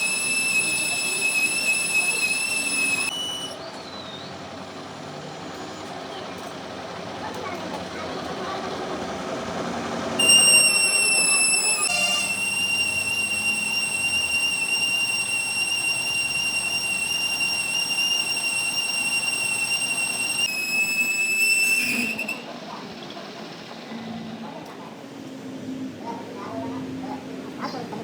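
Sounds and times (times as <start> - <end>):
high-pitched whistling tone: 0.0 - 4.3, 10.2 - 22.7.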